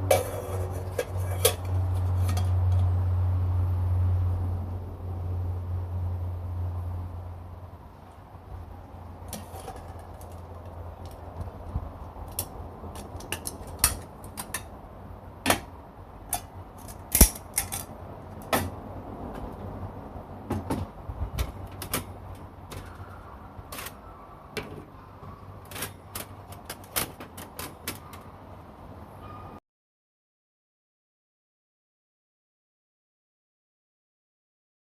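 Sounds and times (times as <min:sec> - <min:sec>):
metal parts clicking and clinking: 0:12.3 - 0:14.7, 0:16.3 - 0:18.7, 0:23.7 - 0:24.0, 0:25.6 - 0:28.2.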